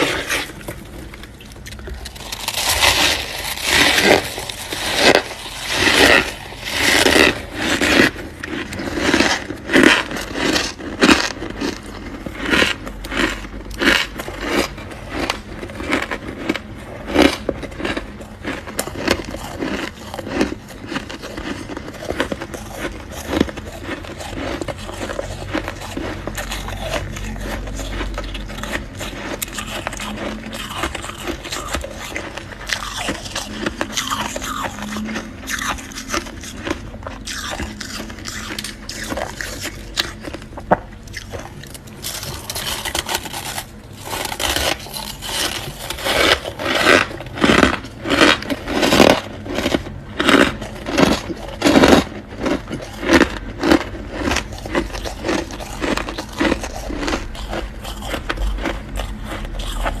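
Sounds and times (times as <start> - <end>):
frost crunching when chewed: 0.0 - 60.0
frost scraping: 2.0 - 10.6.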